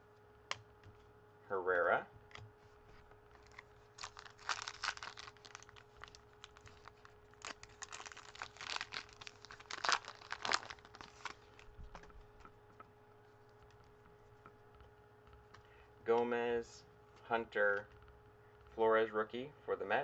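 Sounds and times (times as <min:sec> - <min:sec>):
card pack wrapper tearing: 0:03.4 - 0:11.7.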